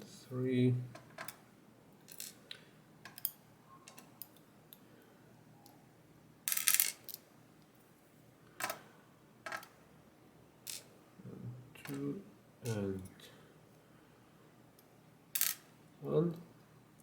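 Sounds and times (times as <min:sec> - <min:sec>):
metal pins clicking on hard surface: 0:06.5 - 0:07.2, 0:10.7 - 0:10.9, 0:15.4 - 0:15.6.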